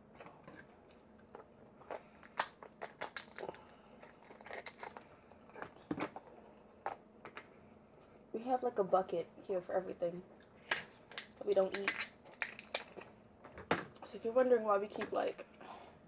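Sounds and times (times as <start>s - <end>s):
crab shell cracking: 1.9s - 5.0s, 10.7s - 13.2s.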